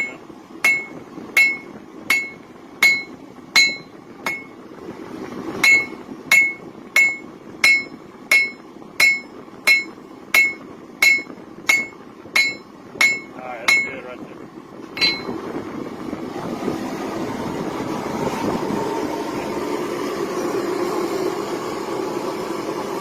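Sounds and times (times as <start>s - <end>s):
hammer striking metal on anvil: 0.0s - 4.6s, 5.6s - 14.1s, 15.0s - 15.4s.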